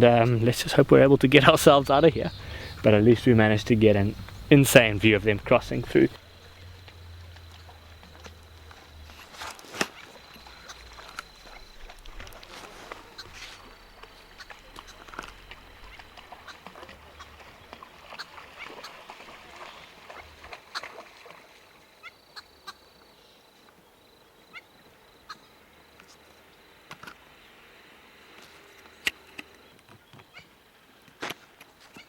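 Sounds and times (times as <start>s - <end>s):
birds calling: 0.0s - 21.0s.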